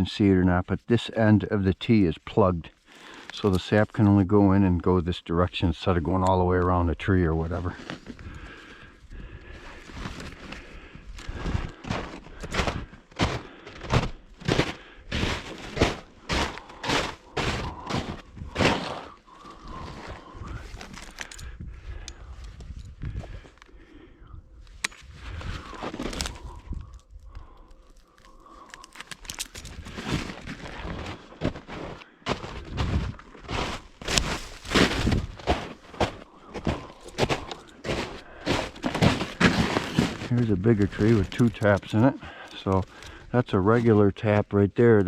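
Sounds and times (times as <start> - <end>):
footsteps walking: 9.7 - 23.7, 24.7 - 43.0.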